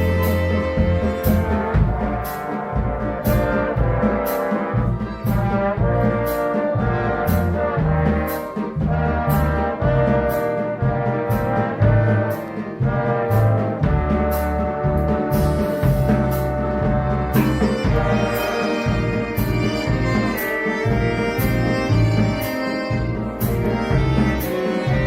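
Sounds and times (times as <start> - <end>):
swing big band playing: 0.0 - 25.0.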